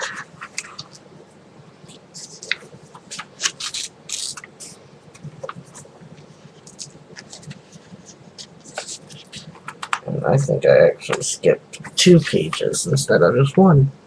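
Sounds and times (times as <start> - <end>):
paper pages rustling: 0.0 - 1.0, 1.9 - 10.1.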